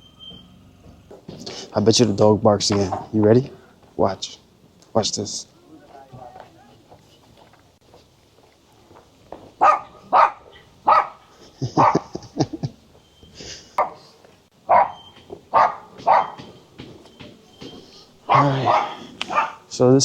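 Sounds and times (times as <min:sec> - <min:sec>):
dog barking: 0:09.6 - 0:12.1, 0:13.8 - 0:16.5, 0:18.2 - 0:19.7.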